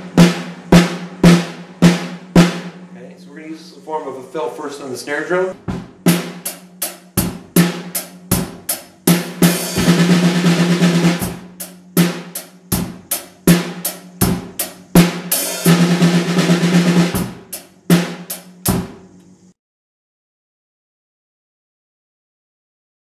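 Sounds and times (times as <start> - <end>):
bass drum: 0.0 - 3.1, 5.5 - 19.1
fast snare drum fills: 0.0 - 19.0
drum kit beat: 0.0 - 19.2.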